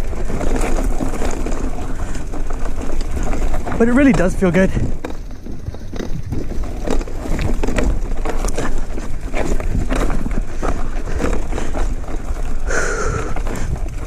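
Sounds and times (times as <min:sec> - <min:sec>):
bike chain and frame rattling: 0:00.0 - 0:14.0
bike tyres crunching on dirt: 0:00.0 - 0:14.0
wind rumbling on microphone: 0:00.0 - 0:14.0.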